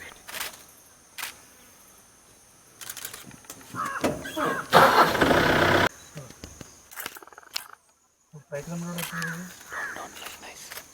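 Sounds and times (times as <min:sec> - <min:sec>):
crows cawing: 0:03.8 - 0:05.2, 0:09.2 - 0:10.0.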